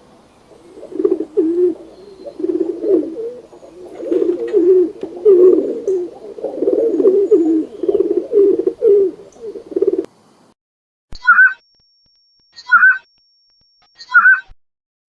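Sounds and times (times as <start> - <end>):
pigeons cooing: 0.0 - 10.1.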